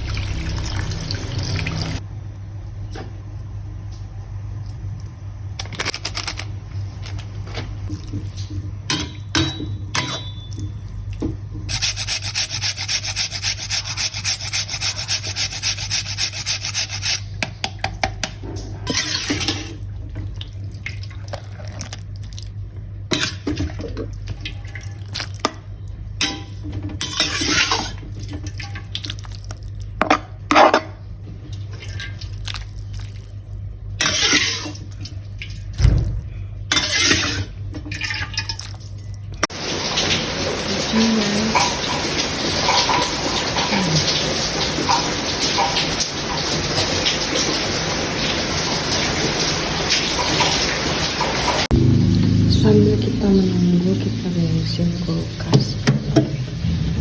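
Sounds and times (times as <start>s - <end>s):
water running from a tap: 0.0s - 2.0s, 7.8s - 18.2s, 38.0s - 57.0s
rubbing and splashing: 11.7s - 17.3s.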